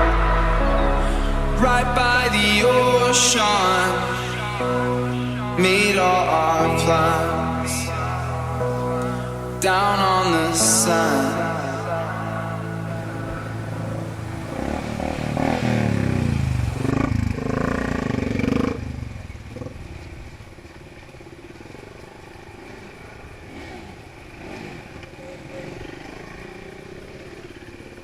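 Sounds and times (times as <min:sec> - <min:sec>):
motorcycle engine revving: 0:13.7 - 0:28.0.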